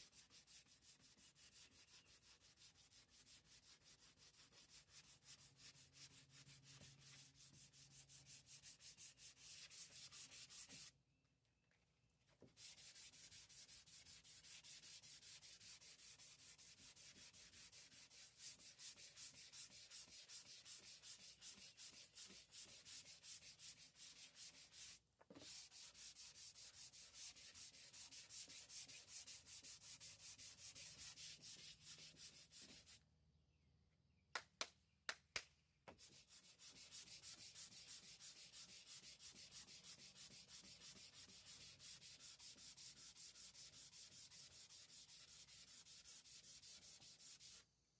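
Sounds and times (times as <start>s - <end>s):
sandpaper rubbing fiberglass: 0.0s - 10.9s, 12.5s - 33.0s, 36.0s - 47.6s.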